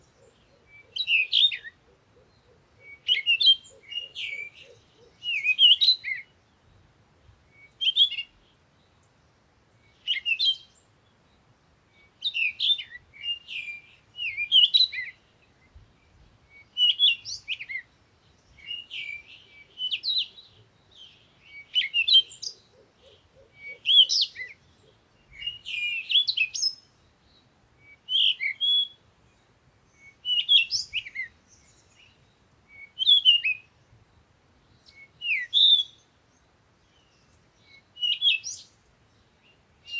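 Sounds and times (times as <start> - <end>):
songbird chirping and whistling: 0.1 - 1.8, 2.8 - 6.3, 7.5 - 8.4, 9.9 - 10.8, 12.1 - 15.8, 16.5 - 17.9, 18.5 - 24.6, 25.3 - 27.0, 27.8 - 29.0, 29.9 - 33.7, 34.7 - 36.1, 37.0 - 38.8.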